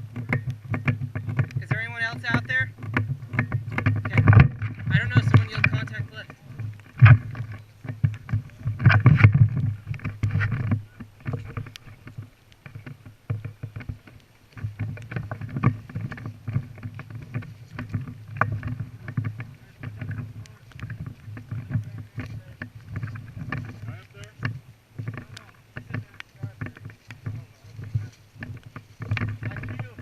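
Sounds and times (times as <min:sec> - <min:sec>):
rustling and scuffing of gear: 0:00.0 - 0:30.0.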